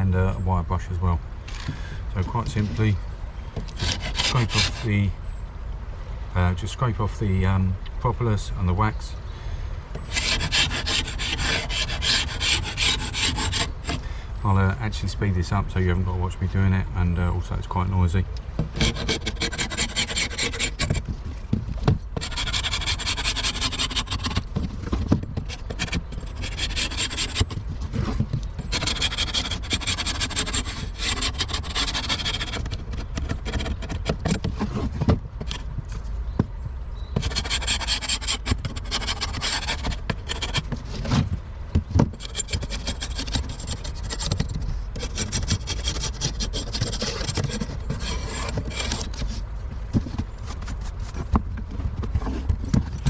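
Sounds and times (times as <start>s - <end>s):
metal tools rasping on metal: 3.8s - 4.9s, 18.8s - 21.0s, 22.2s - 24.4s, 25.5s - 27.6s, 28.6s - 34.0s, 37.2s - 40.6s, 42.2s - 49.2s.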